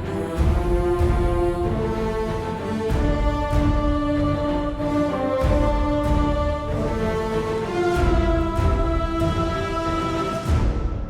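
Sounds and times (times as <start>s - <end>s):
orchestral chords: 0.0s - 11.0s.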